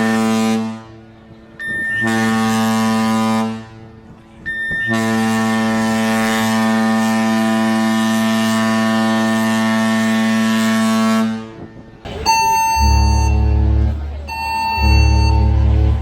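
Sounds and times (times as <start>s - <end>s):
deep ship horn blast: 0.0s - 4.2s, 4.8s - 16.0s
higher horn tone: 12.3s - 16.0s.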